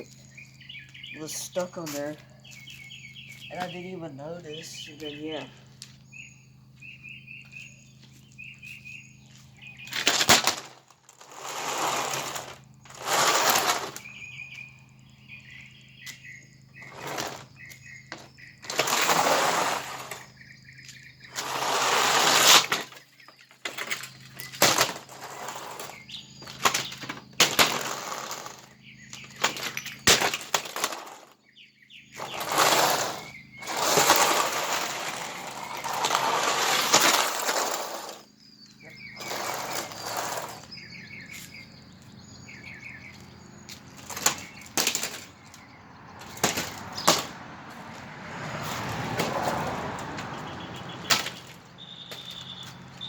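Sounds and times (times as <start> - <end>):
birds chirping faintly: 0.0 - 10.3, 11.7 - 53.0
objects hitting a box fan: 9.8 - 14.1, 21.4 - 31.4, 32.2 - 38.2, 44.0 - 45.4, 46.2 - 47.4, 51.0 - 52.4.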